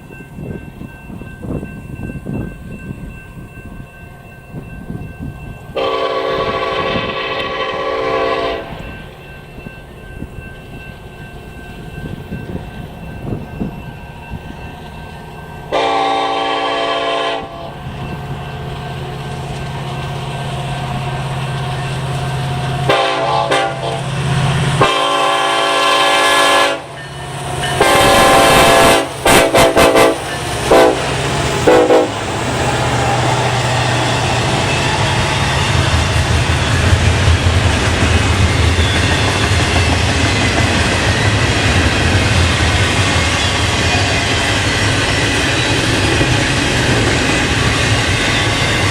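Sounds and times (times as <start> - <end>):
diesel locomotive engine rumble: 0.0 - 48.9
locomotive air horn blasts: 5.8 - 8.8, 15.7 - 17.7, 22.8 - 24.1, 24.8 - 26.9, 27.8 - 32.2.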